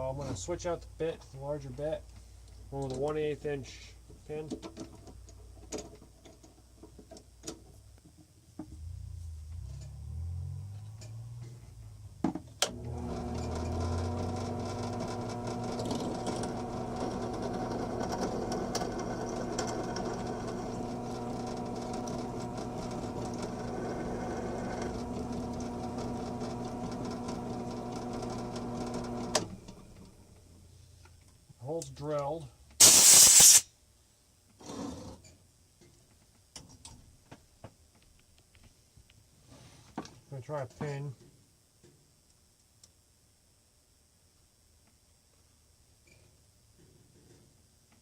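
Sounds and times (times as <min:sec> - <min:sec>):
electric drill boring metal: 0:12.7 - 0:29.5, 0:32.8 - 0:33.6.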